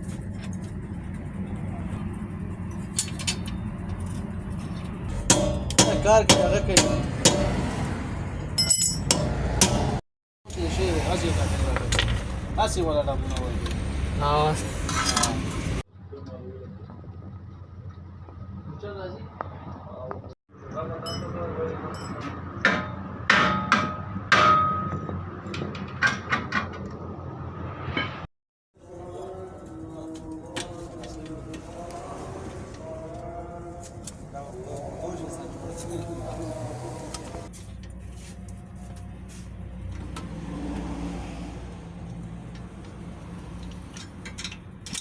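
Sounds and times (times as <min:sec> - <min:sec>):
motor vehicle droning: 0:00.0 - 0:23.3, 0:24.1 - 0:45.0
hammer striking metal: 0:05.1 - 0:07.8, 0:08.6 - 0:10.0, 0:22.0 - 0:25.2.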